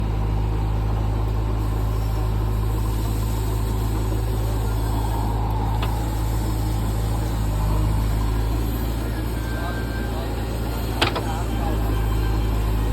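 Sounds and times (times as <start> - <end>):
diesel engine running: 0.0 - 12.9.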